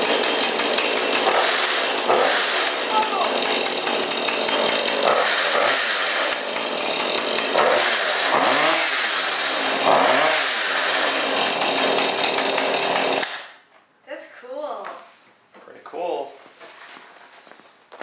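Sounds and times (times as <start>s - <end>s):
chainsaw engine revving: 0.0s - 13.6s.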